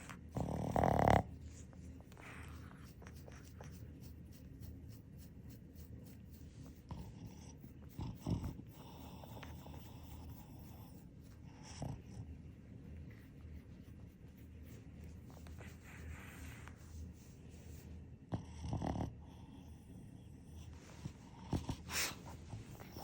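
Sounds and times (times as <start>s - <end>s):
dog snorting: 0.0s - 3.8s, 6.6s - 12.3s, 21.0s - 23.0s
dog breathing: 0.0s - 3.9s, 6.6s - 12.4s, 20.6s - 23.0s
hand stroking fur: 0.9s - 8.1s, 12.6s - 18.0s.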